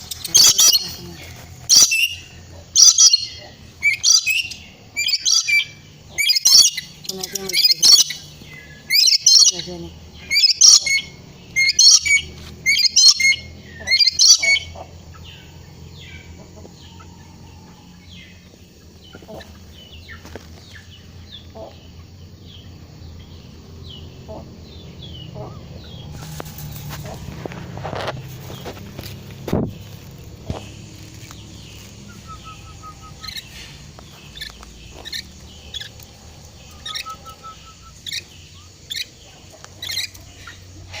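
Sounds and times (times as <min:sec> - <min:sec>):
parrot chirping calls: 0:00.0 - 0:26.2, 0:30.6 - 0:41.0.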